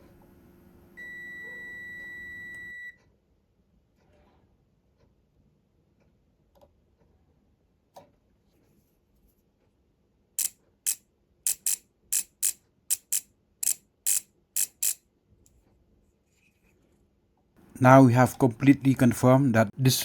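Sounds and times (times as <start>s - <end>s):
sharp mechanical clicks: 10.4s - 15.0s.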